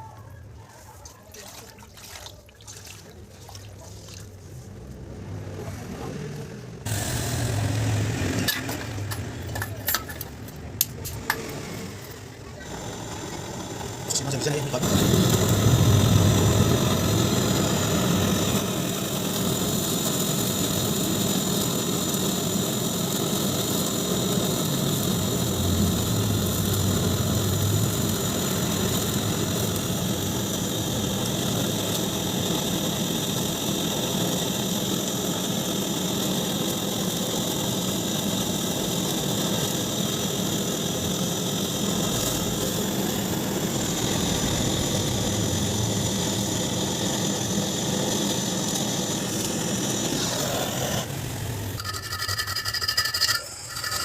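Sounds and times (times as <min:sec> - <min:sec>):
machine motor drone with whine: 0:06.8 - 0:09.2, 0:11.5 - 0:33.9, 0:37.6 - 0:51.8.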